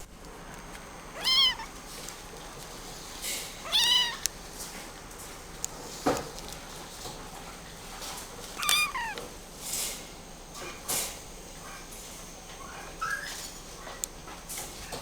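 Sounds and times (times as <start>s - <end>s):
kitten meowing: 1.2s - 1.7s, 3.6s - 4.3s, 8.5s - 9.3s
small clicks: 8.6s - 9.3s.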